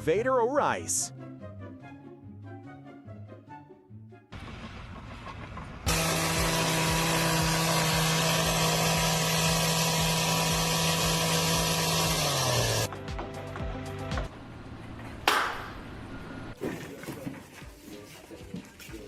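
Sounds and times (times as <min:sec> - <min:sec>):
excavator engine and hydraulics: 0:04.4 - 0:16.6.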